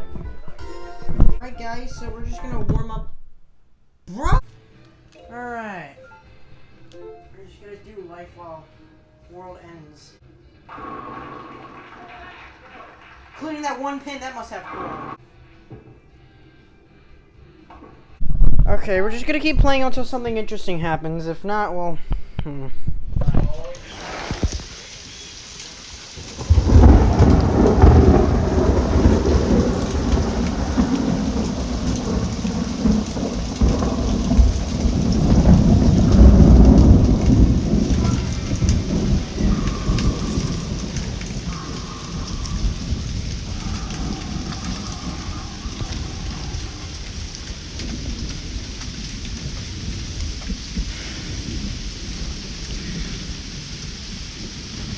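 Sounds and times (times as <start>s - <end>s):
steady rain: 10.7s - 14.5s, 23.7s - 54.9s
thunder rumbling: 10.7s - 15.2s, 23.8s - 54.9s.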